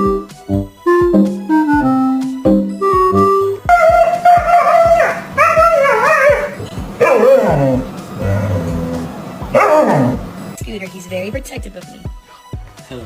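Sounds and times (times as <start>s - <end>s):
background music with steady beat: 0.0s - 13.0s
dog whining and howling: 3.7s - 10.4s.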